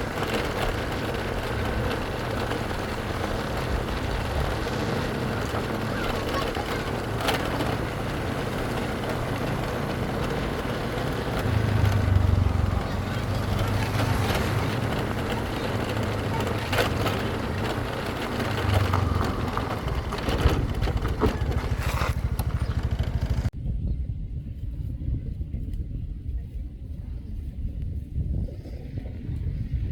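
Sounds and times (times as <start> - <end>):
motorcycle engine: 0.0 - 23.6
wind on microphone: 0.0 - 29.9.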